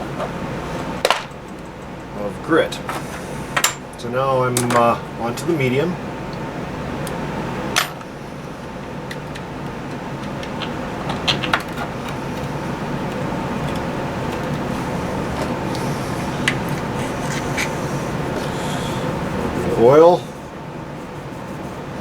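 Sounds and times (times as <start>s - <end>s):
steady hiss: 0.0s - 8.8s, 11.8s - 22.0s.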